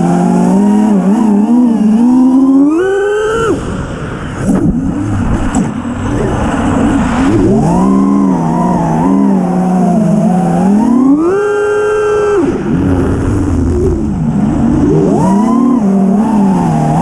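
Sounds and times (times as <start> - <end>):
drone motors whining: 0.0 - 17.0
low rough rushing noise: 3.4 - 10.6, 12.2 - 17.0.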